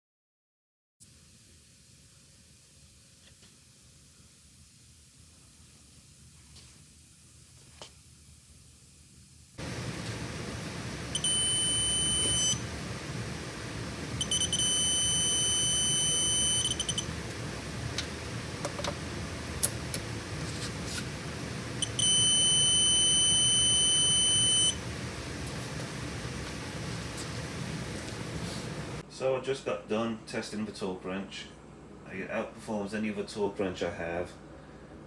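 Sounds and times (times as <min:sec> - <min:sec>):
steady background hiss: 0:01.1 - 0:34.8
long high electronic beeps: 0:11.1 - 0:12.7, 0:14.2 - 0:17.2, 0:21.8 - 0:24.8.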